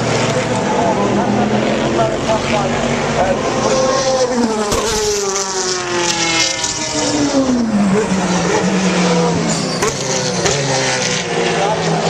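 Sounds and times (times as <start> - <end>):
race car passing by: 0.1 - 12.0.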